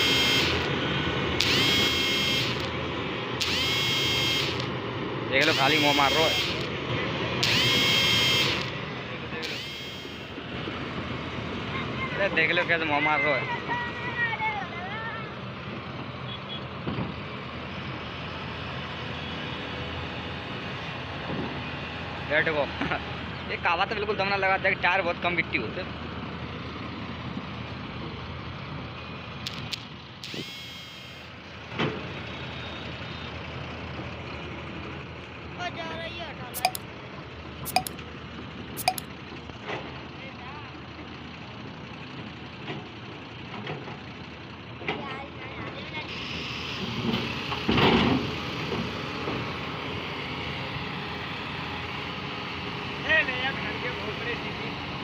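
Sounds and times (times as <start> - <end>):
diesel engine running under load: 0.0 - 55.0
loud short burst of noise: 1.4 - 2.8, 7.4 - 8.8
short high tone: 36.6 - 36.8, 37.7 - 38.0, 38.8 - 39.1.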